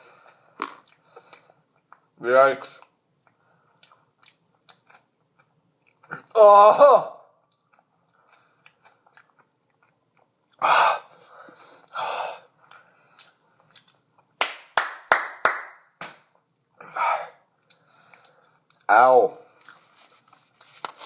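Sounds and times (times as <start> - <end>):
person chewing: 0.1 - 2.2, 2.8 - 6.4, 7.4 - 14.4, 16.3 - 18.9, 19.5 - 21.0
heavy breaths: 10.6 - 13.4, 16.8 - 18.7.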